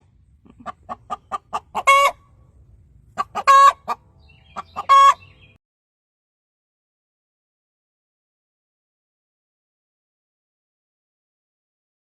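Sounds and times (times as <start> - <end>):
hen cackling and squawking: 0.5 - 2.4, 3.1 - 5.6.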